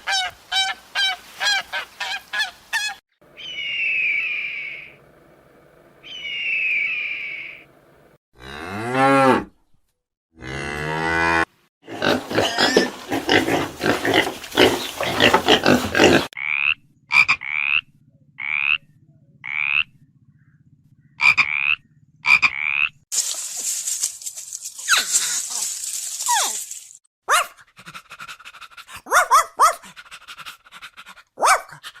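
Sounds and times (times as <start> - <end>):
rough noisy animal calls: 0.0 - 5.2, 6.0 - 7.8, 11.8 - 23.0
cow mooing: 8.4 - 9.5, 10.4 - 12.6
honk: 21.2 - 22.9
hiss: 23.1 - 27.0.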